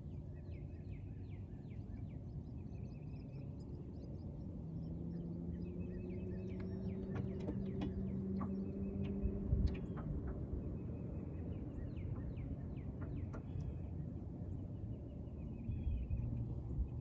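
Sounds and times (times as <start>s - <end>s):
birds chirping: 0.2s - 17.0s.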